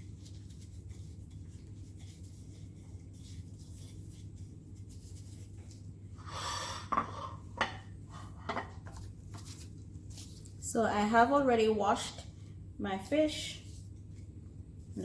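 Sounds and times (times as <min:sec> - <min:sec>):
rustling scrape: 0:00.0 - 0:10.6
low background hum: 0:00.0 - 0:15.0.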